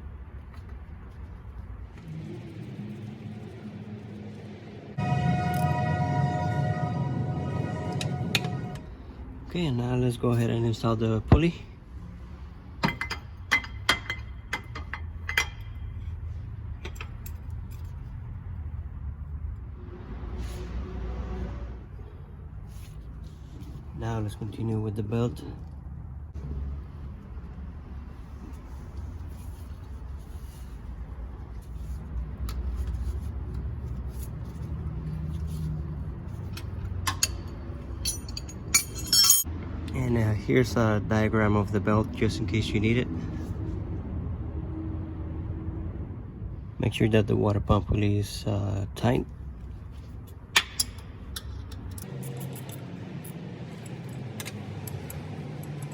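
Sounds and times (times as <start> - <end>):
steady low hum: 0.0 - 12.8
low steady rumble: 0.0 - 55.9
metallic clinks and taps: 36.5 - 39.5.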